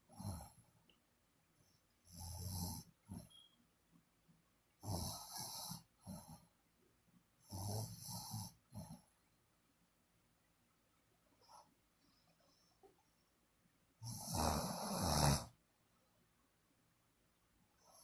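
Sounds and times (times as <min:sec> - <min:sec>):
snoring: 0:00.1 - 0:00.6, 0:02.1 - 0:03.3, 0:04.8 - 0:06.5, 0:07.4 - 0:09.0, 0:14.0 - 0:15.6.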